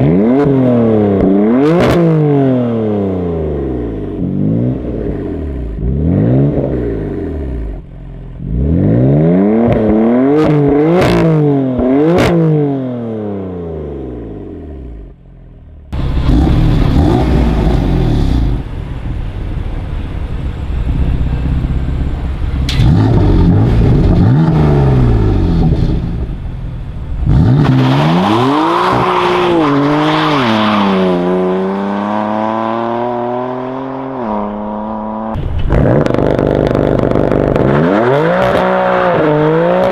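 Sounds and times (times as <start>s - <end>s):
car exhaust revving: 0.0s - 39.9s
car accelerating hard: 16.0s - 18.7s, 27.2s - 39.9s
exhaust cracks: 20.9s - 28.0s, 34.9s - 39.9s.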